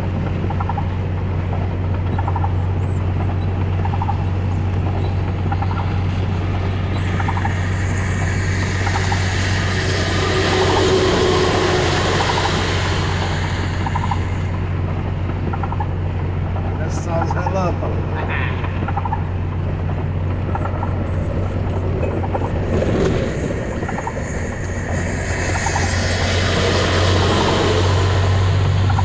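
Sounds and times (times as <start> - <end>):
engine and road drone: 0.0 - 29.0
rain and tyre spray hiss: 3.6 - 16.8, 19.2 - 29.0.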